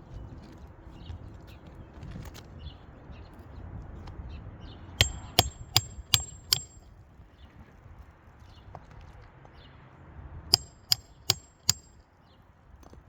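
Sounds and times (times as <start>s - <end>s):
hammer striking roofing nail: 5.0s - 6.8s, 10.5s - 11.9s.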